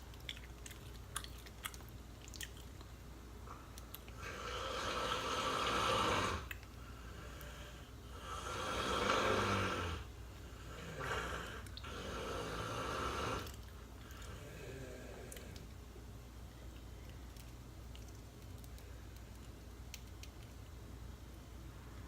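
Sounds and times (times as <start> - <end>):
person snoring: 4.2 - 6.5, 7.1 - 13.6, 14.2 - 15.6.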